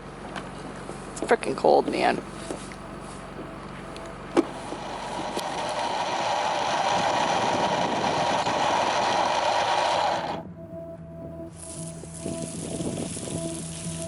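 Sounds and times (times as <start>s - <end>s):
faint steady hum: 0.0s - 14.0s
motor running: 1.8s - 10.4s.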